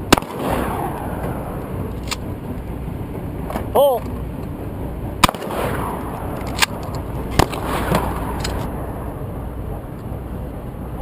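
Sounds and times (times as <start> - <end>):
loud shotgun shot: 0.0 - 1.4, 5.2 - 8.6
faint gunshots: 0.1 - 1.0, 5.2 - 6.0.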